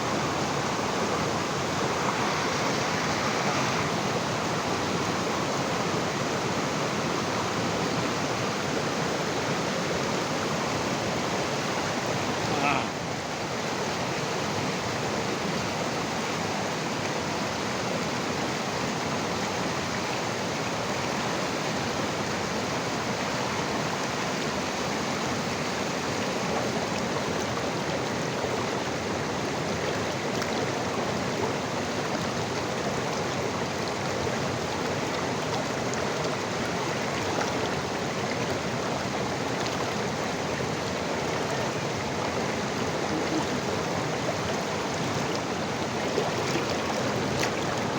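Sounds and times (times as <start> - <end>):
river water flowing: 0.0 - 47.9.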